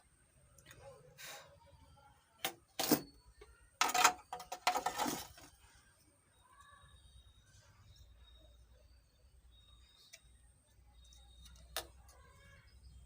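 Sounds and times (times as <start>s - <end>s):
scrapes and clinks of tools: 3.8s - 5.5s.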